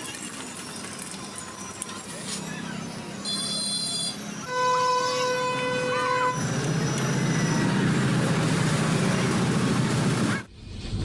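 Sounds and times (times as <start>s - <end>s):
street traffic rumble: 0.1s - 10.5s
steady horn tone: 3.3s - 7.7s.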